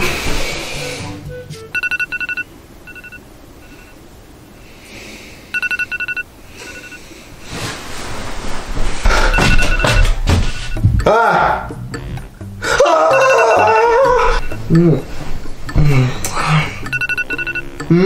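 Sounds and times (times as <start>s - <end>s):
electronic alarm two-tone beeps: 1.7s - 4.0s, 5.6s - 7.0s, 9.3s - 10.9s, 13.1s - 14.8s, 16.8s - 17.9s.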